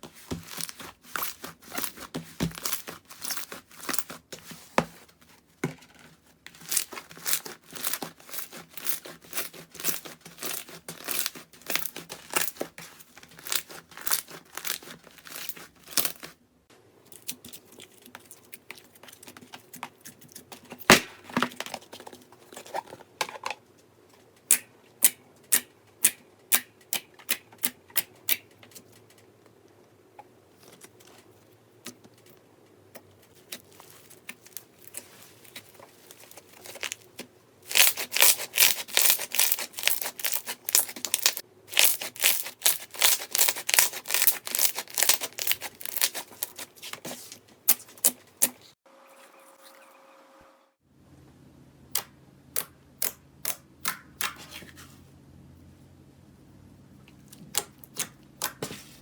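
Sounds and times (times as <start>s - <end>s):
slime crackling and popping: 6.6s - 16.3s, 37.7s - 46.7s.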